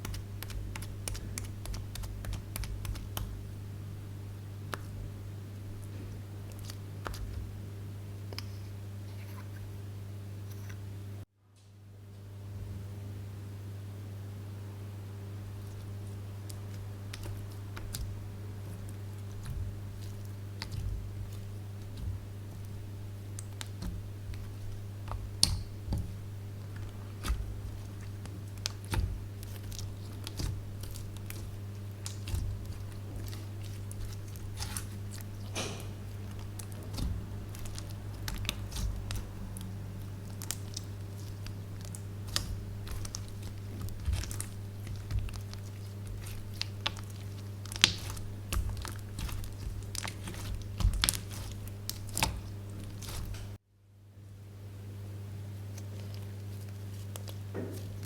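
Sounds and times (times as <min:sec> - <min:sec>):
slime squished by hand: 0:00.0 - 0:03.6, 0:05.8 - 0:07.6, 0:15.5 - 0:53.6
steady low hum: 0:00.0 - 0:58.0
crackles and pops: 0:16.4 - 0:53.6.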